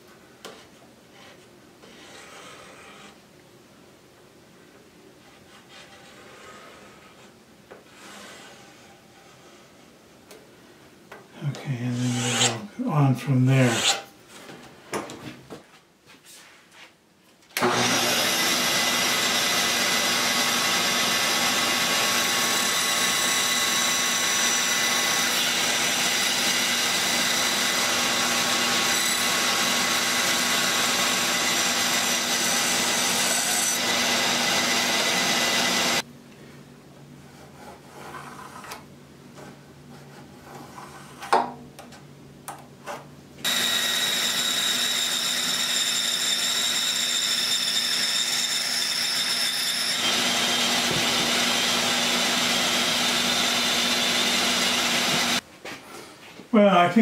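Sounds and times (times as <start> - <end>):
power tool motor whine on wood: 17.6 - 36.0, 43.4 - 55.4.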